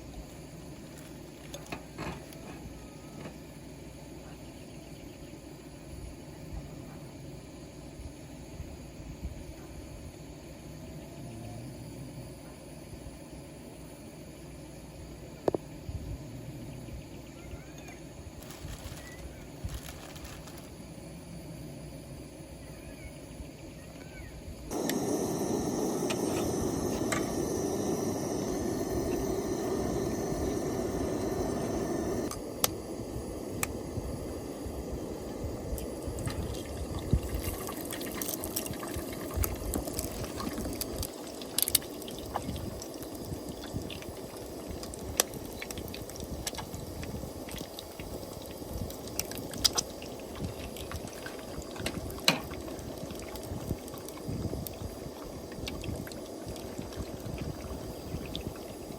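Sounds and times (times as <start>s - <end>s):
liquid pouring: 35.8s - 46.4s, 47.3s - 58.9s.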